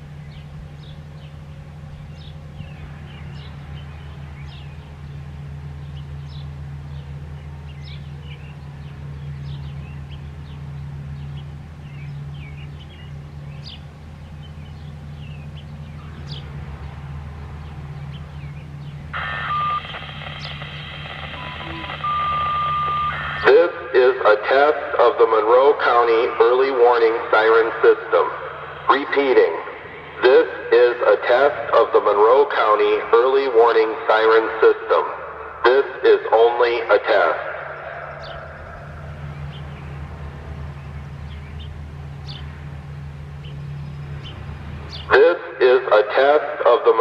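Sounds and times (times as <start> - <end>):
birds chirping: 0.0 - 47.0
steady low hum: 0.0 - 47.0
long steady beep: 19.1 - 23.9
short activation tones: 19.2 - 23.8
radio static: 19.2 - 39.2, 45.1 - 47.0.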